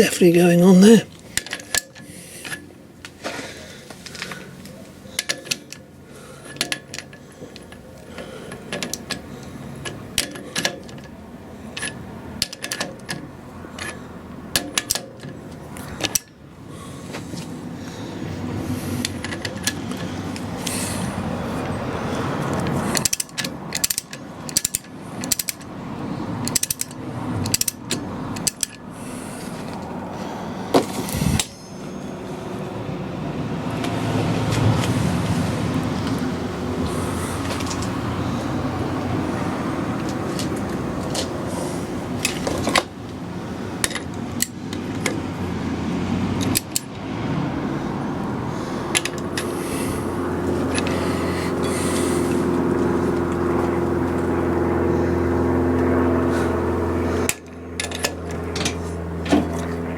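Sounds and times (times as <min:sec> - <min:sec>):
ratchet wrench clicking: 0:22.9 - 0:25.7, 0:26.4 - 0:28.8.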